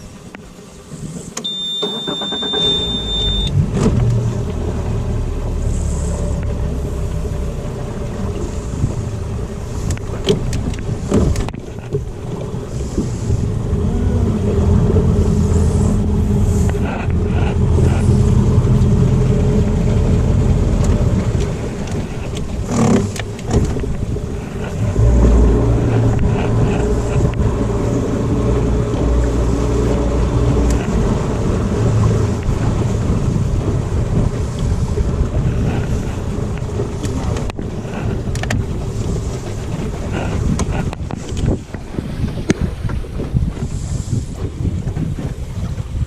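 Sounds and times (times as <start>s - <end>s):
outboard motor running: 0.1s - 46.0s.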